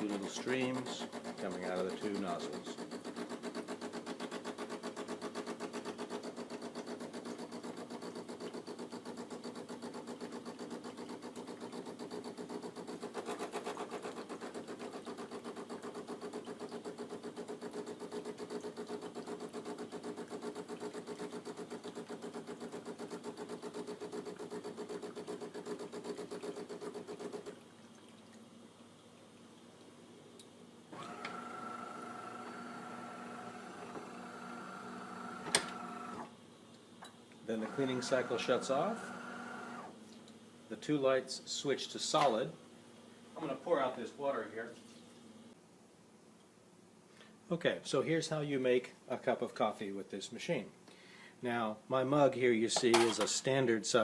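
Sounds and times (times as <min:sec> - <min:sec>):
espresso machine pump buzzing: 0:00.0 - 0:27.5, 0:30.9 - 0:36.3, 0:37.5 - 0:39.9.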